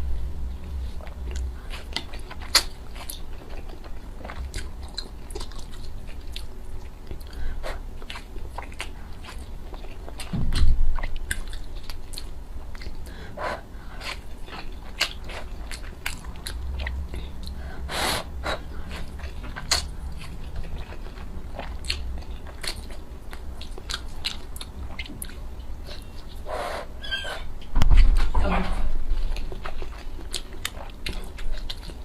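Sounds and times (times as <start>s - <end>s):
chewing food: 0.6s - 26.7s, 29.1s - 32.0s
low thump: 27.7s - 28.9s.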